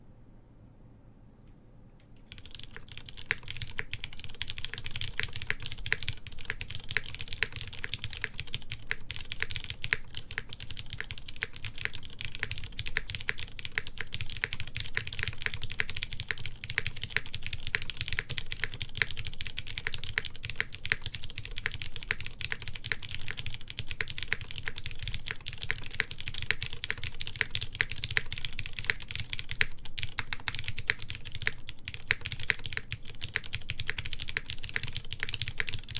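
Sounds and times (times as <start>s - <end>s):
fast typing on mechanical keyboard: 2.2s - 35.9s.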